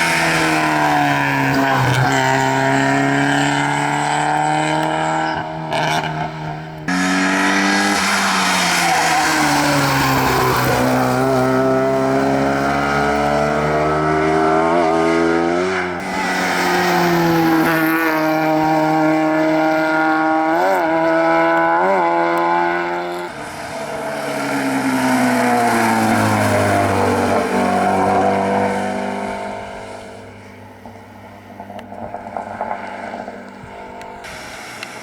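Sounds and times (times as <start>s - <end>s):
rally car engines revving: 0.0s - 35.0s.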